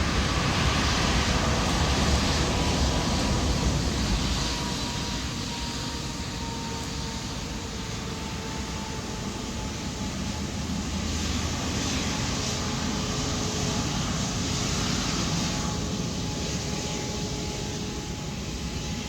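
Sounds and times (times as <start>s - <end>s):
jet engine rushing with whine: 0.0s - 19.0s.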